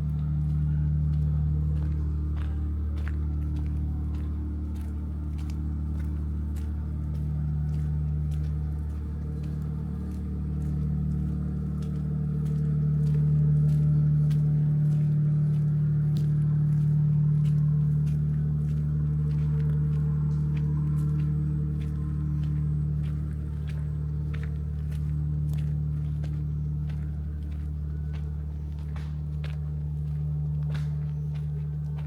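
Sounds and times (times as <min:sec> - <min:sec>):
low engine hum: 0:00.0 - 0:32.0.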